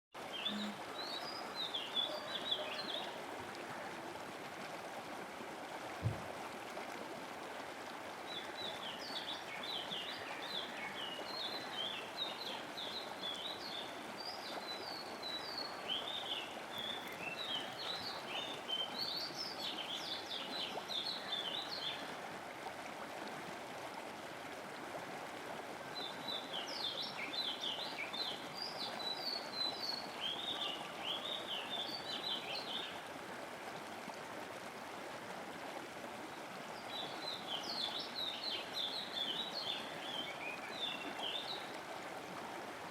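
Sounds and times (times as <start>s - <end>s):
flowing water rushing: 0.2s - 42.9s
small birds chirping: 0.3s - 3.1s
low thump: 6.0s - 6.3s.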